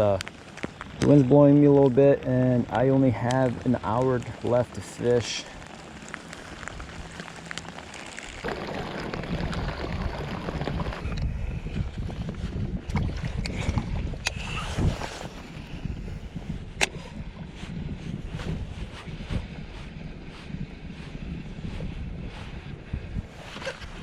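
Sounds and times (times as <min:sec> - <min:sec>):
wind buffeting microphone: 0:08.3 - 0:24.0.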